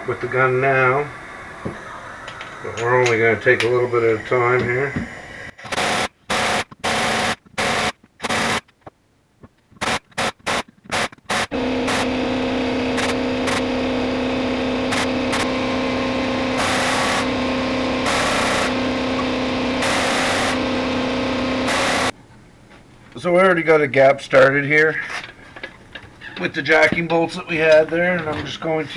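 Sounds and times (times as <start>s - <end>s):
impact gun bursts: 5.6s - 8.6s, 9.8s - 22.1s
low steady hum: 11.5s - 23.2s.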